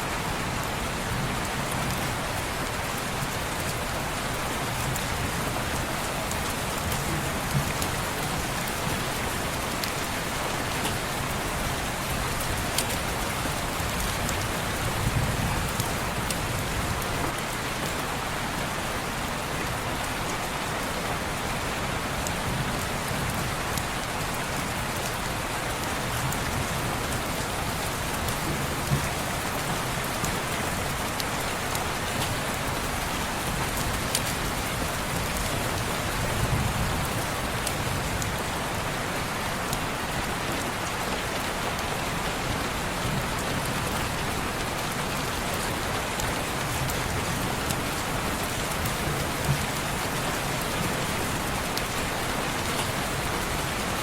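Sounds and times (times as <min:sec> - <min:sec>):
rain on window glass: 0:22.2 - 0:54.0.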